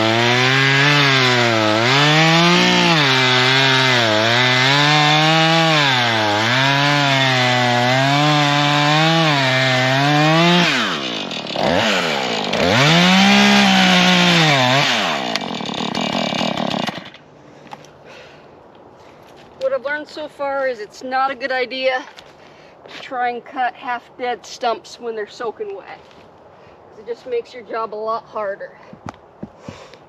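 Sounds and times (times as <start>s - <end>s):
chainsaw cutting wood: 0.0s - 17.8s.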